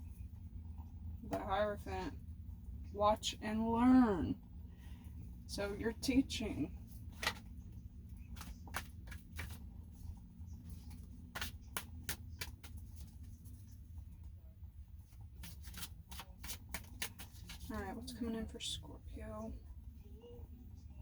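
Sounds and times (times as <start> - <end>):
low steady hum: 0.0 - 21.0
cards shuffling and clicking: 7.1 - 7.6, 8.2 - 9.7, 10.6 - 13.6, 15.2 - 17.8.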